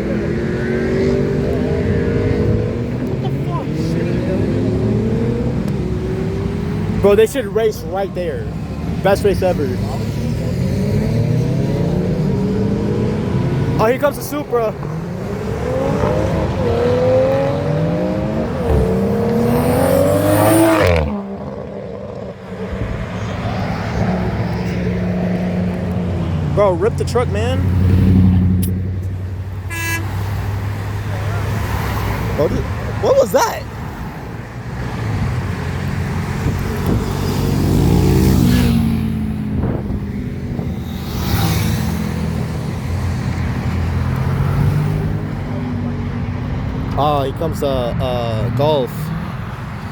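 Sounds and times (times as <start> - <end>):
car engine accelerating through gears: 0.0 - 7.1, 9.7 - 26.6, 34.6 - 47.0.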